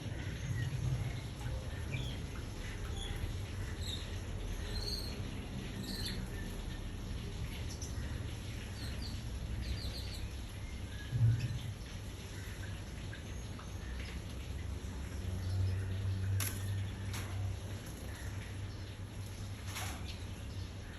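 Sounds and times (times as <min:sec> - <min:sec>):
small birds chirping: 0:00.0 - 0:20.9.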